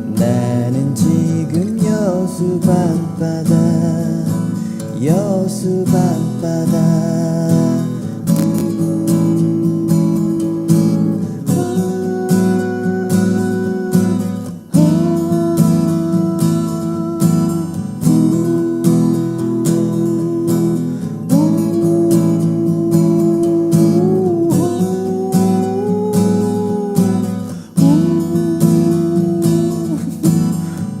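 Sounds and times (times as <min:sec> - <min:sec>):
acoustic guitar strumming: 0:00.0 - 0:31.0
sliding held melody notes: 0:05.7 - 0:31.0.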